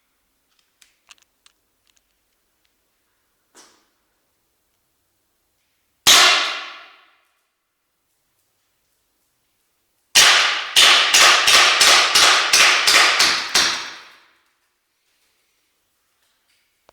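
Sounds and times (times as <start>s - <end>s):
airsoft pistol shots: 6.1s - 7.0s, 10.2s - 14.1s.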